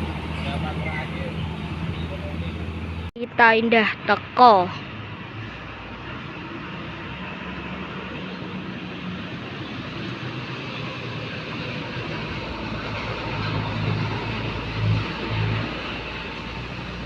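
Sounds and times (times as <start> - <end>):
bus diesel engine humming: 0.0 - 17.0
road noise: 0.0 - 17.0.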